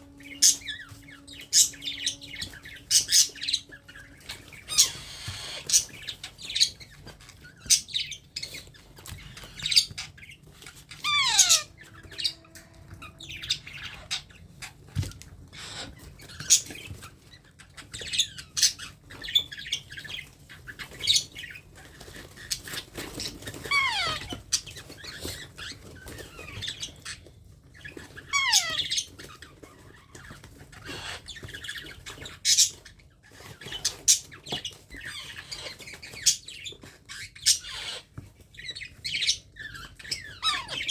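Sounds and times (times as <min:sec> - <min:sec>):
parrot squawking: 0:00.0 - 0:06.6, 0:10.7 - 0:14.7, 0:23.6 - 0:24.4, 0:28.3 - 0:29.2, 0:40.1 - 0:40.9
parrot call falling in pitch: 0:11.0 - 0:14.2, 0:23.7 - 0:24.4.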